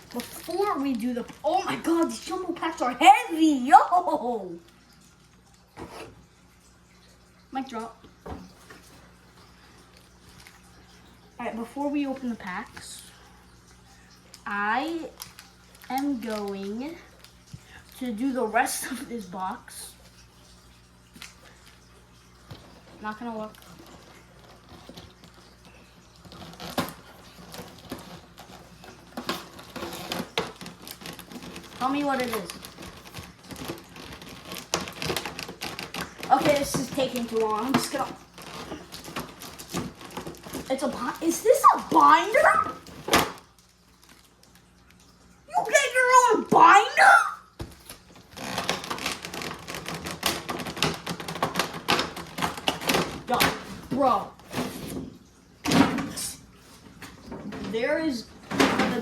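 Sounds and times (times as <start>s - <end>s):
packaging rustling: 23.5s - 44.8s
items knocking and clicking: 26.2s - 41.2s, 47.6s - 56.2s, 58.4s - 59.0s.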